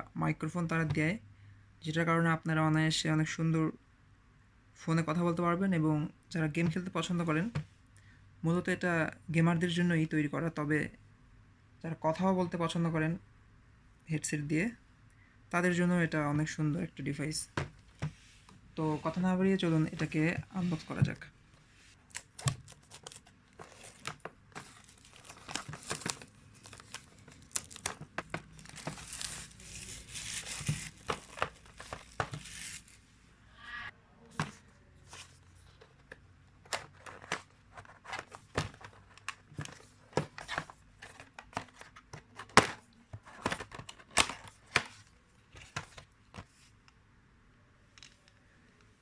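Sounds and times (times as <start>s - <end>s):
plastic wrap crinkling and tearing: 23.8s - 33.0s.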